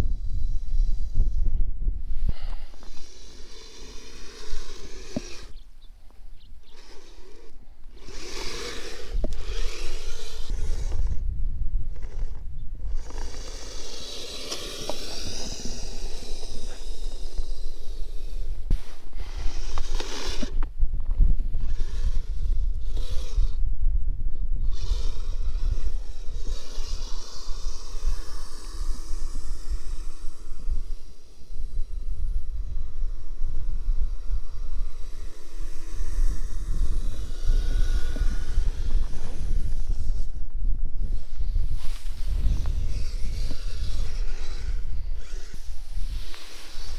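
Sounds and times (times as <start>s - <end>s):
wind buffeting microphone: 0.0s - 46.9s
electric motor whine: 2.1s - 11.3s, 11.9s - 20.7s, 24.6s - 46.9s
scraping in snow: 41.7s - 46.9s.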